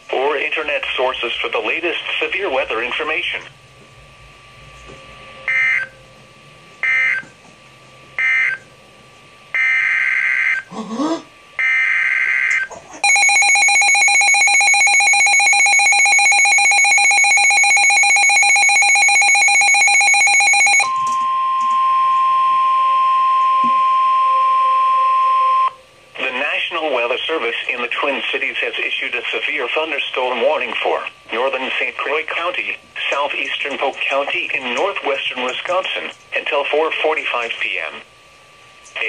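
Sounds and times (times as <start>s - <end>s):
rapidly pulsing electronic alarm: 1.1s - 10.7s, 11.5s - 27.1s
steady single-pitch alarm tone: 3.6s - 10.7s, 11.6s - 26.0s.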